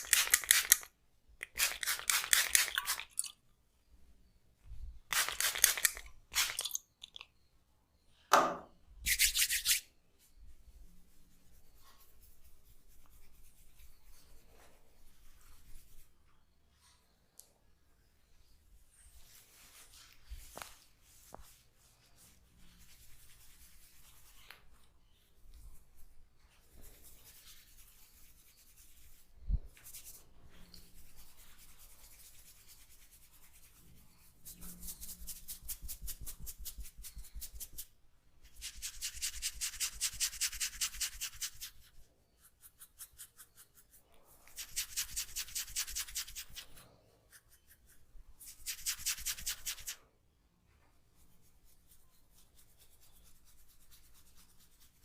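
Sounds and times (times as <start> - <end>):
soft rubbing: 18.4 - 50.0
comb scraping through hair: 48.4 - 50.0.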